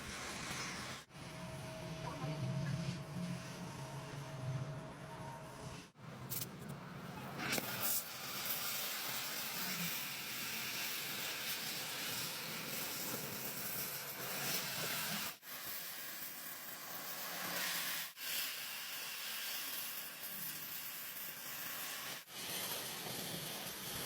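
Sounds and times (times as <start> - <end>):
welding arc hissing crackle: 0.0 - 1.1, 7.4 - 24.0.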